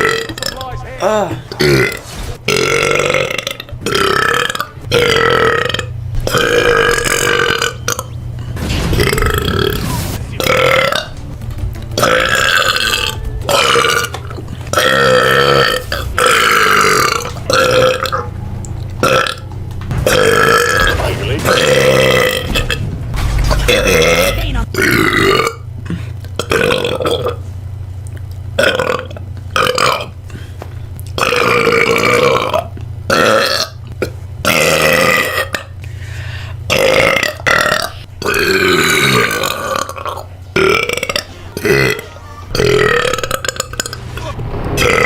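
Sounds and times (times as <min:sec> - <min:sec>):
woman belching: 0:00.0 - 0:08.1, 0:09.0 - 0:09.8, 0:10.4 - 0:11.1, 0:12.0 - 0:18.3, 0:19.0 - 0:19.4, 0:20.1 - 0:20.9, 0:23.6 - 0:25.6, 0:26.4 - 0:27.4, 0:28.6 - 0:30.2, 0:31.2 - 0:33.8, 0:36.7 - 0:44.0.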